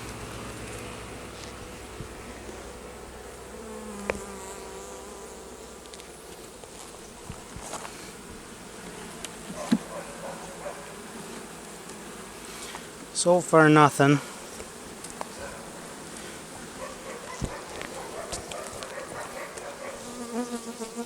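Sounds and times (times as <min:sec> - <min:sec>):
bees buzzing: 0:00.0 - 0:21.0.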